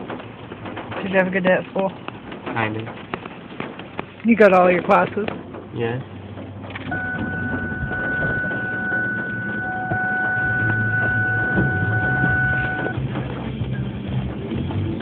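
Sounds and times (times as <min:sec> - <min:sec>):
low hum: 0:06.4 - 0:14.5
car electronic warning tone: 0:06.9 - 0:13.0.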